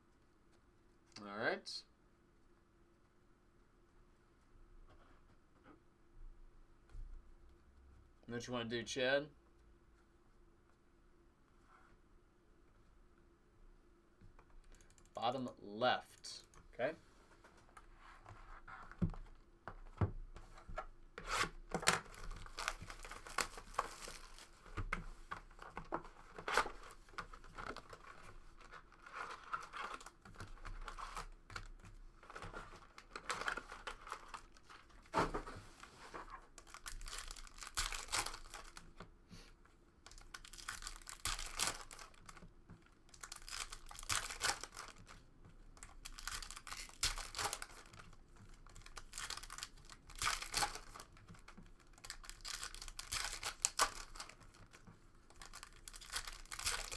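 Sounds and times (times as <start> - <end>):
wrapper ripping: 21.3 - 24.5, 36.6 - 38.9, 40.1 - 42.4, 43.1 - 45.1, 45.8 - 48.1, 48.7 - 56.9
wrapper crackling rustle: 22.0 - 24.7, 35.8 - 38.9, 40.1 - 42.5, 43.1 - 45.2, 45.8 - 56.9.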